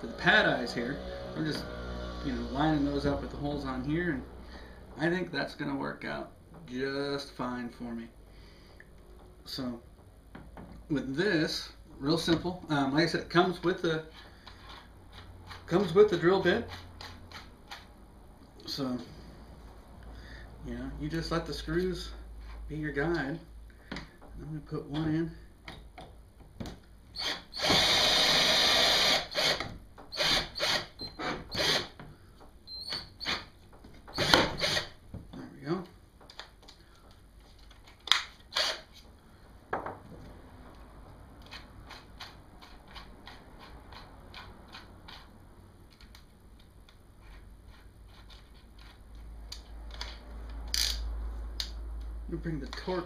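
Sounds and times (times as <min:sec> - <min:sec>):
cordless drill driving screw: 0:27.2 - 0:32.0, 0:34.2 - 0:35.0, 0:38.5 - 0:39.0.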